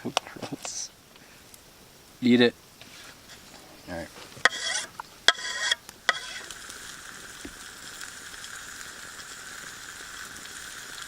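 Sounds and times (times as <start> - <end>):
meat sizzling in a pan: 0.0 - 11.0.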